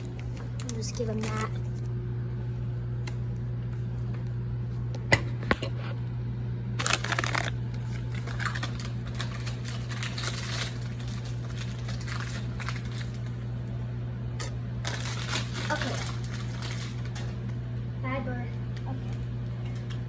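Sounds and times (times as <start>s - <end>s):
chips crinkling and crunching: 0.0s - 1.8s, 6.8s - 13.5s, 14.8s - 17.6s
steady low hum: 0.0s - 20.0s.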